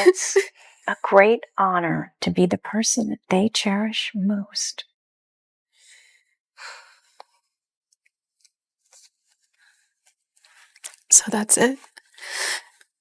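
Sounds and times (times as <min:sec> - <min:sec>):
faint breaths: 0:05.8 - 0:07.3.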